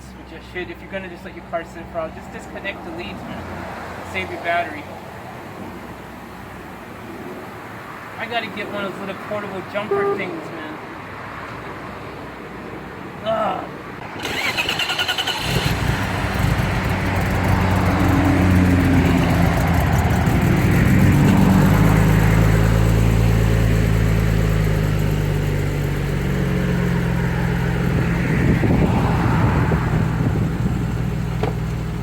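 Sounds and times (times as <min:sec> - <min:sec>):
car engine idling: 0:14.0 - 0:32.0
car starter cranking: 0:14.1 - 0:16.8.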